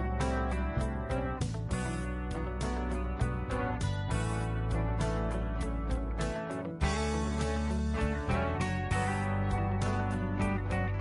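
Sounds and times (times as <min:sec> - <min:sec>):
strummed guitar music: 0:00.0 - 0:11.0.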